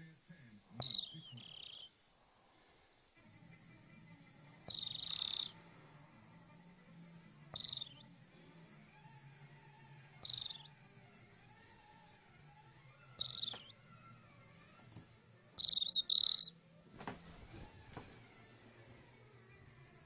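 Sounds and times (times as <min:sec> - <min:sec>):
woman snoring with squeak: 0:04.7 - 0:05.8.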